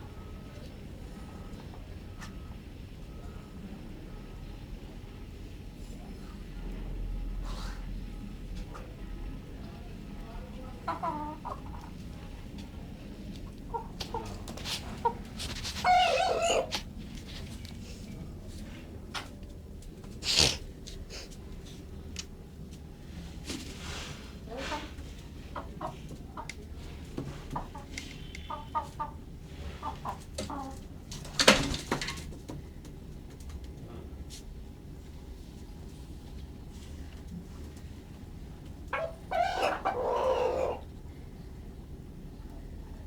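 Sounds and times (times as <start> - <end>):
chickens clucking: 10.7 - 17.6, 23.6 - 32.5, 38.6 - 41.1.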